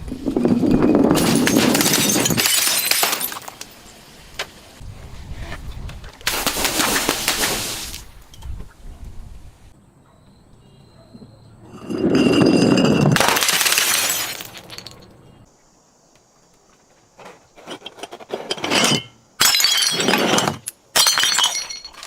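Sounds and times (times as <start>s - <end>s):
glass bottle crushing and cracking: 0.9s - 3.8s, 11.8s - 15.0s, 18.5s - 22.0s.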